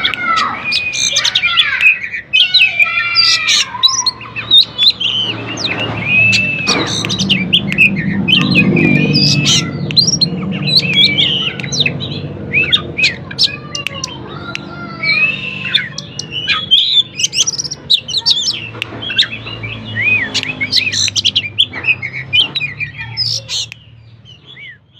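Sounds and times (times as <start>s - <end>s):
bird singing: 0.0s - 24.9s.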